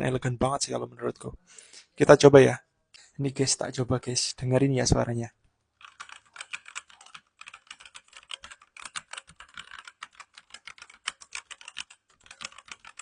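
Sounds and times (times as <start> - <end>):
fast keyboard typing: 5.8 - 13.0.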